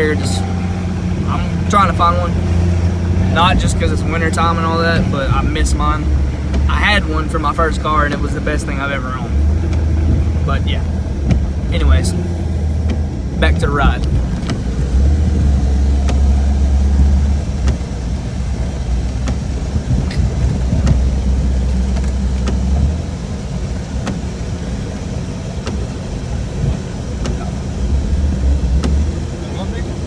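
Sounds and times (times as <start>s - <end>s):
car engine and road drone: 0.0s - 30.0s
faint clicks: 9.3s - 29.2s.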